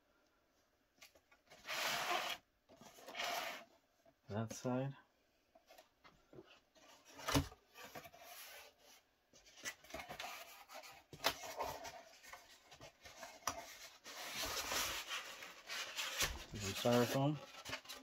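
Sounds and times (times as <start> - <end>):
cardboard rubbing and scraping: 1.5 - 3.7, 9.9 - 18.0.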